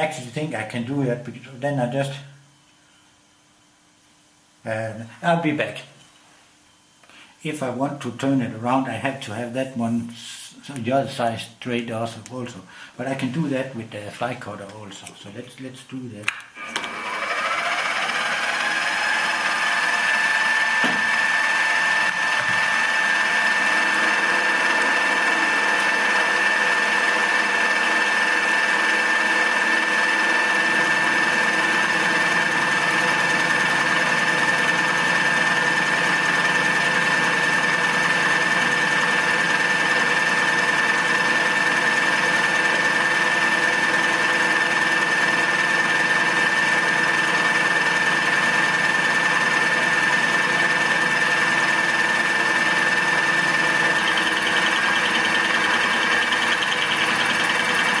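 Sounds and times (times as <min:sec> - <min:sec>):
machine motor whining: 0:16.6 - 0:58.0.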